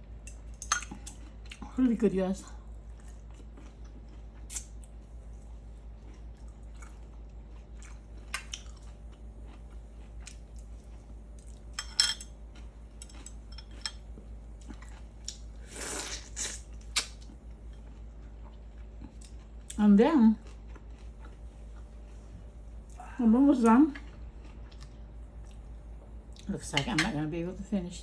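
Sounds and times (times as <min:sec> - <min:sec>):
low steady hum: 0:00.0 - 0:28.0
person chewing: 0:00.2 - 0:01.7, 0:02.8 - 0:19.8, 0:20.4 - 0:23.0, 0:24.0 - 0:26.5
mouth clicks and smacks: 0:16.9 - 0:17.2.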